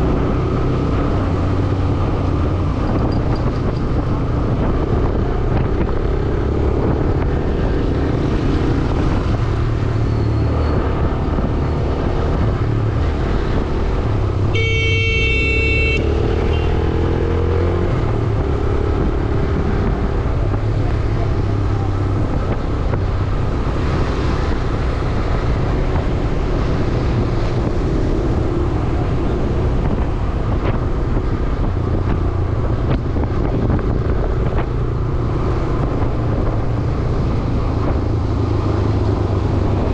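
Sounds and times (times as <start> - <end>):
motorcycle engine rumble: 0.0 - 39.9
road noise: 0.0 - 39.9
vehicle horn: 14.5 - 16.8.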